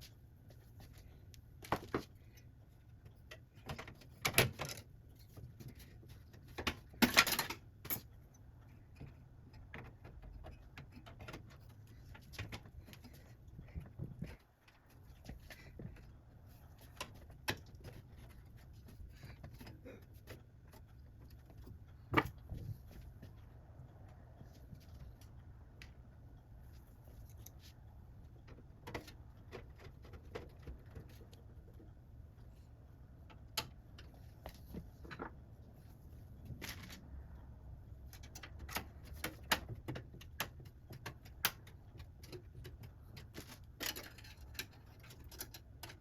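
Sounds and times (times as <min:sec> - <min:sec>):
computer hardware clicks and knocks: 0:03.1 - 0:13.2, 0:38.1 - 0:46.0.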